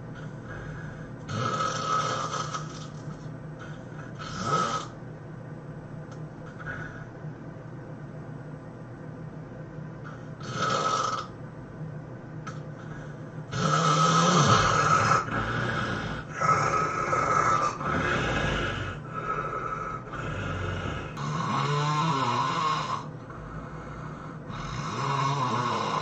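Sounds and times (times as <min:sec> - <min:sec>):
person snoring heavily: 0:00.0 - 0:03.0, 0:03.6 - 0:05.0, 0:10.4 - 0:11.3, 0:13.5 - 0:26.0.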